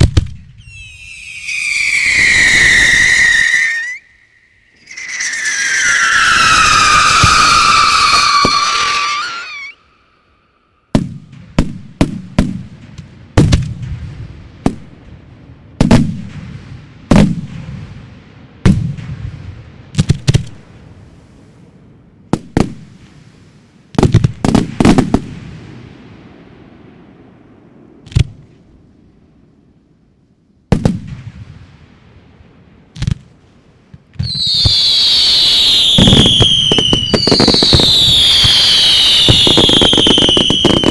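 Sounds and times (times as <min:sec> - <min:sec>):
fireworks bangs with echo: 0:04.6 - 0:09.8, 0:10.9 - 0:21.1, 0:24.0 - 0:28.9, 0:30.7 - 0:40.9.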